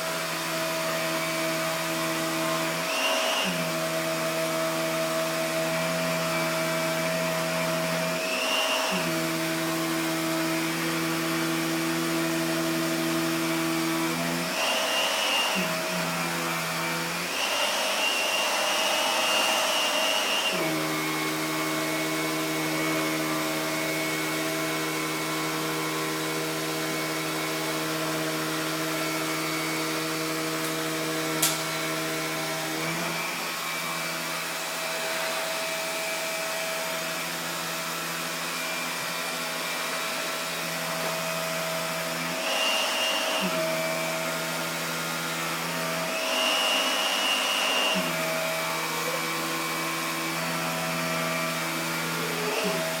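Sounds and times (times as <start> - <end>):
vacuum cleaner running: 0.0 - 53.0
sharp click: 31.4 - 31.6.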